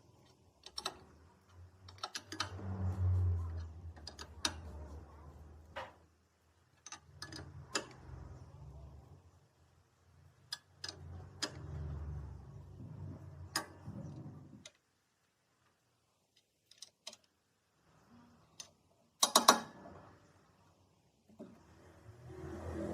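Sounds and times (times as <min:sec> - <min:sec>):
low hum: 0:21.6 - 0:22.9.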